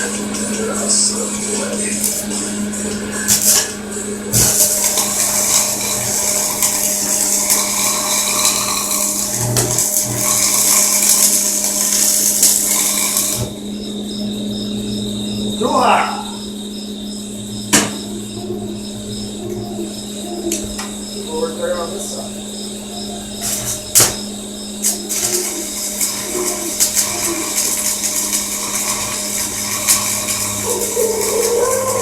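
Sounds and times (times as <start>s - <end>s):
welding arc crackling: 0.0s - 32.0s
low hum: 13.3s - 32.0s.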